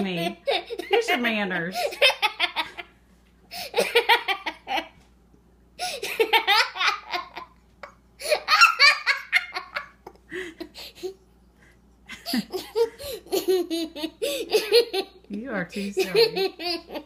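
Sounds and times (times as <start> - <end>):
girl laughing hard: 1.8 - 2.9, 3.6 - 5.0, 5.8 - 7.6, 8.2 - 11.2, 12.1 - 15.2, 16.0 - 17.0.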